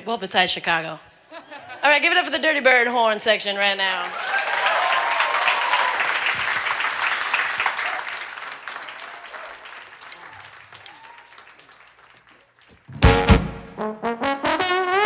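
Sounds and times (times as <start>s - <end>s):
audience applauding: 4.0s - 13.0s.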